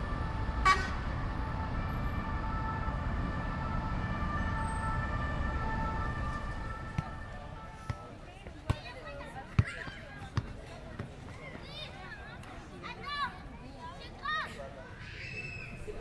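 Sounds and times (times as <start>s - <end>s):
emergency siren: 0.0s - 7.9s
city traffic rumbling: 0.0s - 8.4s
car horns: 0.4s - 2.0s.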